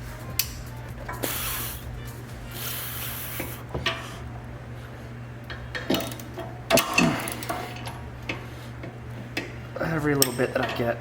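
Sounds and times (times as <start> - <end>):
metal tools clinking on metal: 9.4 - 11.0.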